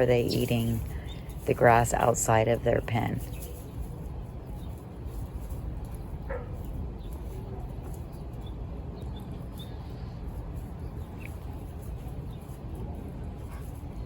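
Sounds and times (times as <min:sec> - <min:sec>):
young chickens calling: 0:00.0 - 0:03.8
steady low rumble: 0:00.0 - 0:14.0.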